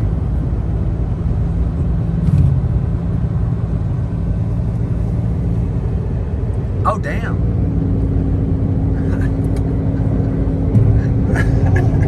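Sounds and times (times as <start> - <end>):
car engine and road noise: 0.0 - 12.0
car bump: 10.7 - 12.0.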